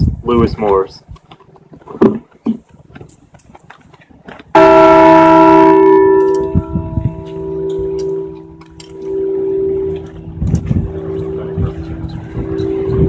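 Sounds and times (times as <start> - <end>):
large bell struck and ringing: 4.6 - 13.0.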